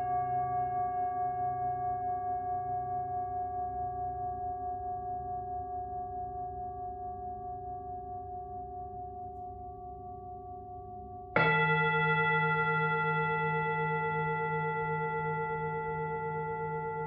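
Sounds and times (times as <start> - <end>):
singing bowl ringing: 11.3 - 17.0.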